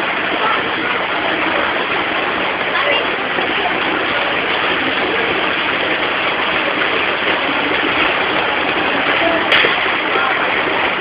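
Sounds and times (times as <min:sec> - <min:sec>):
floodwater rushing: 0:00.0 - 0:11.0
heavy rain: 0:00.0 - 0:11.0.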